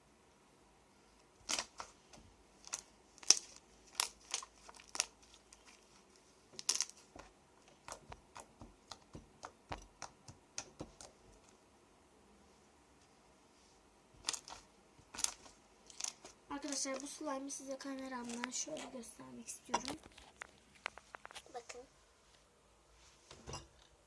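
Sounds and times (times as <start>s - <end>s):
slime squeezed and stretched: 2.6s - 5.8s.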